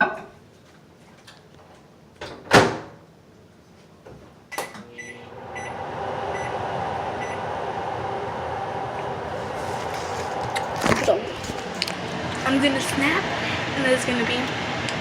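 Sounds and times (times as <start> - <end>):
microwave oven humming: 4.5 - 15.0.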